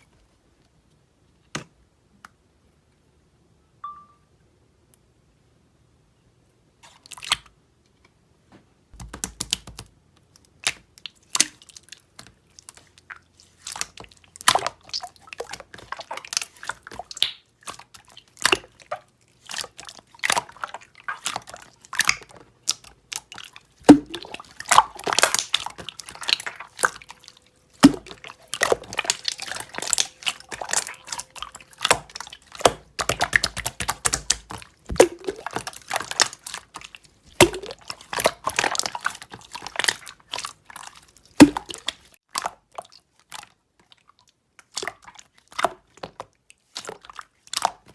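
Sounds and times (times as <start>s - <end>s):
slime squished by hand: 9.0s - 44.0s.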